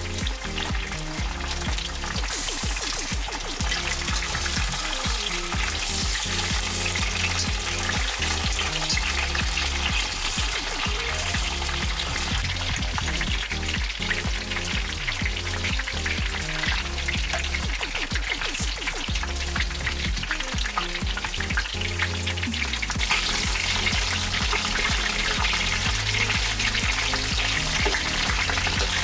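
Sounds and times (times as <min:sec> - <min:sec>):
background music: 0:00.0 - 0:29.0
pork sizzling in a pot: 0:00.0 - 0:29.0
stirring in a pot: 0:00.0 - 0:29.0.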